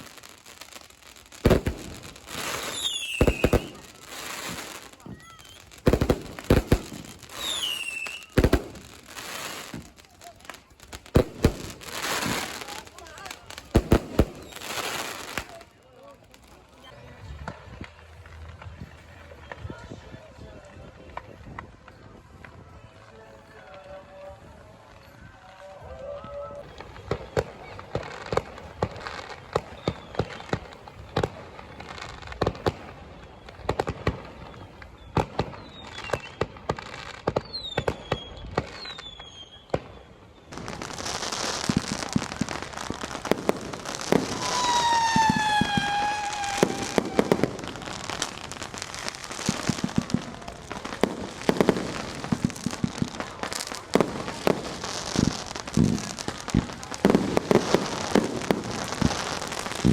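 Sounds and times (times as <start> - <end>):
fireworks bangs and pops: 0.0 - 25.6, 26.5 - 59.9
firework crackle: 0.0 - 59.9
firework whistles falling in pitch: 2.4 - 6.2, 6.9 - 8.9, 37.4 - 39.8, 43.9 - 48.4.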